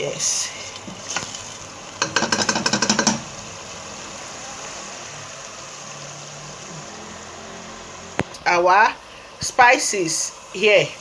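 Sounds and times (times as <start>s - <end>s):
oil sizzling: 0.0s - 11.0s
spoon rattling in a pot: 0.9s - 3.4s.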